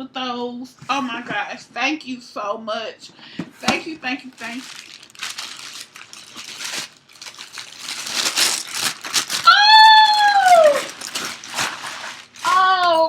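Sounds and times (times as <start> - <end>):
wrapping paper rustling: 3.6 - 13.0.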